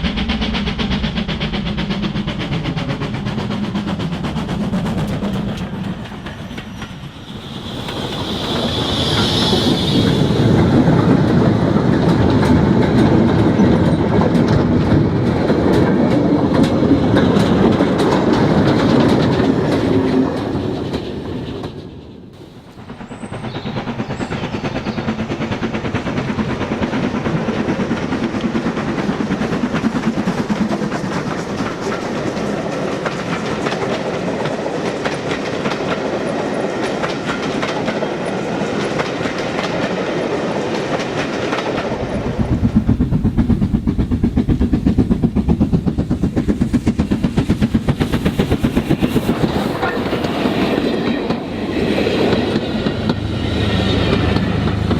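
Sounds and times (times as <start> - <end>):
model train wheels clicking: 22.6 - 54.9.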